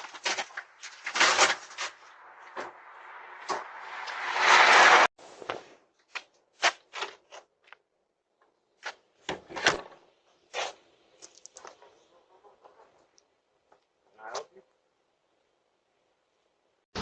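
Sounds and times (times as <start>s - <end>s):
loud rushing noise: 1.9s - 5.1s.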